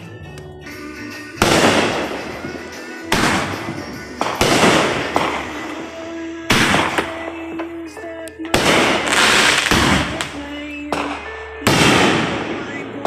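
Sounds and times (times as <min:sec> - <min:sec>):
fireworks bangs with crackling hiss: 0:01.4 - 0:07.3, 0:08.5 - 0:11.1, 0:11.7 - 0:12.6.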